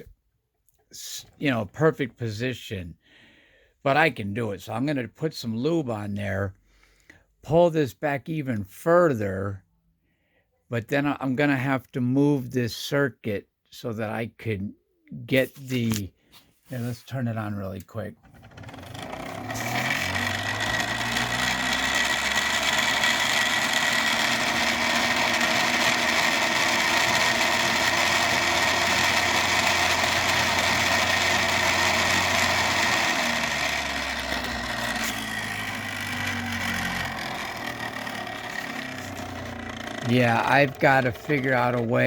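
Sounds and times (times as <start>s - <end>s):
motor rotor rattling whir: 18.2s - 42.0s.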